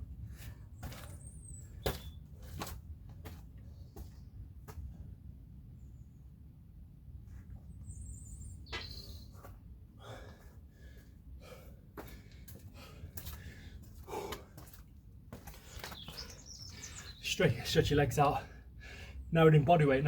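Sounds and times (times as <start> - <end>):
man breathing hard: 10.0 - 14.8, 18.4 - 19.3.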